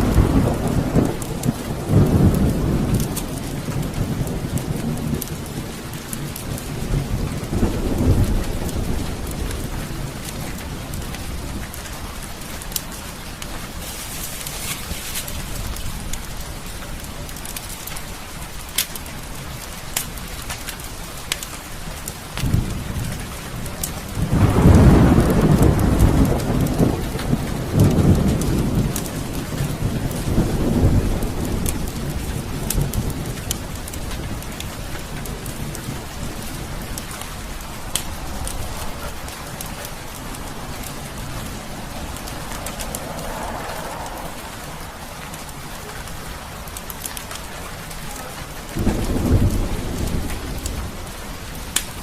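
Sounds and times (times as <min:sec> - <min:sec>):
heavy rain: 0:00.0 - 0:52.0
thunder rumbling: 0:00.0 - 0:52.0.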